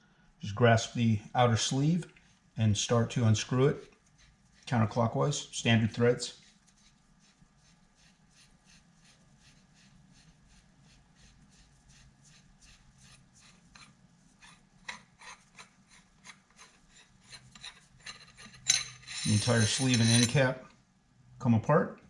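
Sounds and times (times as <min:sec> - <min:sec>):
metal threads scraping: 0:13.6 - 0:20.6.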